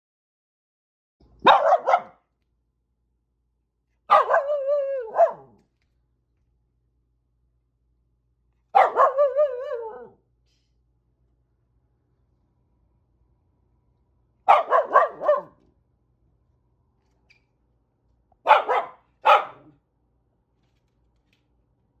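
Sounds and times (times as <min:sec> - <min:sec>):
dog barking and howling: 0:01.4 - 0:02.2, 0:04.1 - 0:05.6, 0:08.7 - 0:10.2, 0:14.5 - 0:15.6, 0:18.5 - 0:19.7.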